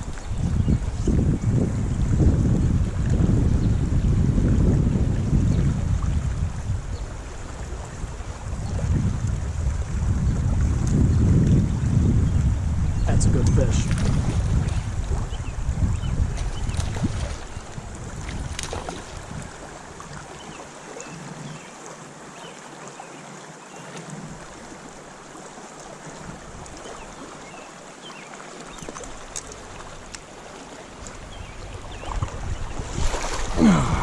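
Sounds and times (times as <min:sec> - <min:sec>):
wind buffeting microphone: 0:00.0 - 0:20.6, 0:28.7 - 0:34.0
flowing creek water: 0:00.0 - 0:34.0.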